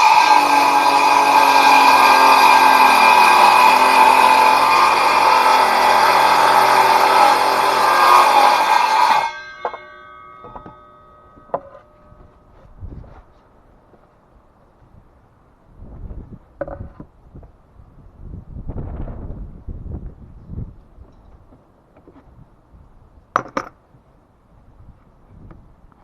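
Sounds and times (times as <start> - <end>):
circular saw cutting wood: 0.0 - 12.5.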